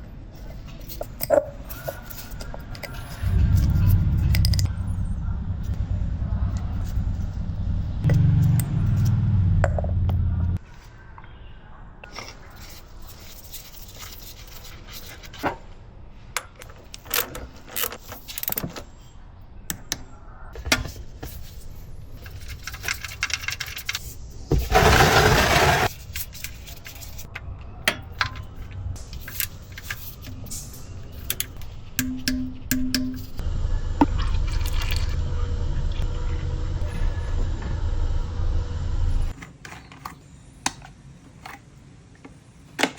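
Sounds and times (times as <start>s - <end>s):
low steady hum: 2.8s - 10.6s, 27.4s - 39.4s.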